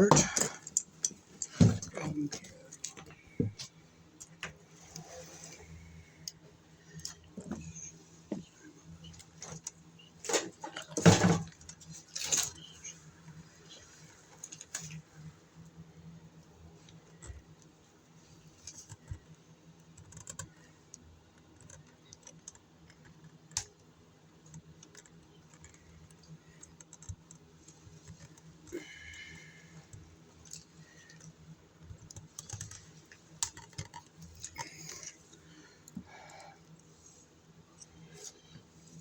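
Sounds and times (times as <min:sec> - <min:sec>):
hand tools and wires clicking: 0:29.8 - 0:36.9.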